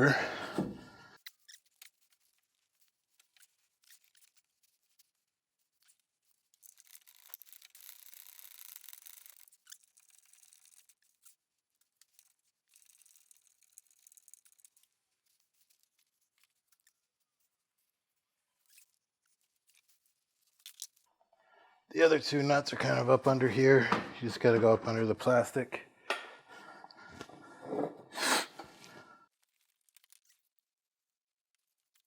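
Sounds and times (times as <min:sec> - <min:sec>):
scraping and rubbing: 0:26.9 - 0:30.2.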